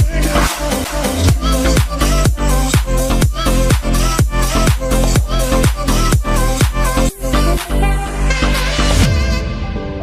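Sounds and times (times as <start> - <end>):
electronic dance music: 0.0 - 10.0
kick drum: 1.3 - 6.9.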